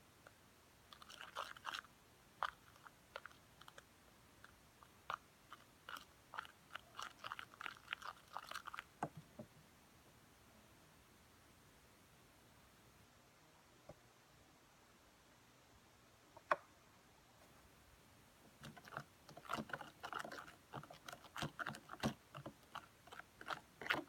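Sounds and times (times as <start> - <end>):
slime squishing and crackling: 1.0 - 3.8, 4.8 - 8.9, 18.6 - 24.0.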